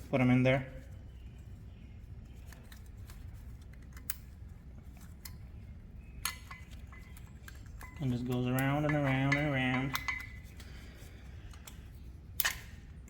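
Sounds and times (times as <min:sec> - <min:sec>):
steady low hum: 0:00.0 - 0:13.0
light metal clicks and taps: 0:02.5 - 0:04.4, 0:06.2 - 0:10.7, 0:11.5 - 0:12.7.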